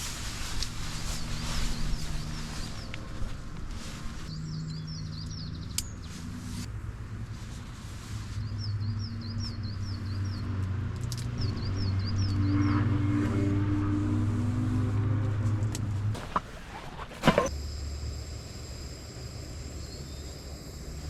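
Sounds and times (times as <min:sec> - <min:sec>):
vehicle engine hum: 0:00.0 - 0:21.0
small birds singing: 0:04.2 - 0:06.4, 0:08.4 - 0:10.6.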